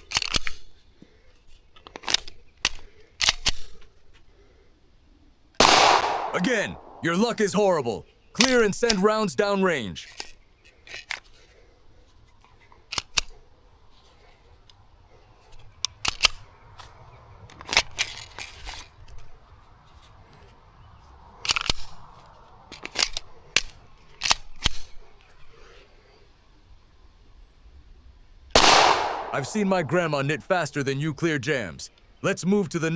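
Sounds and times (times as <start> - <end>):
pistol slide racking clicks: 0.0 - 4.3, 8.4 - 9.0, 10.0 - 11.6, 12.4 - 14.8, 15.4 - 19.3, 21.4 - 25.7.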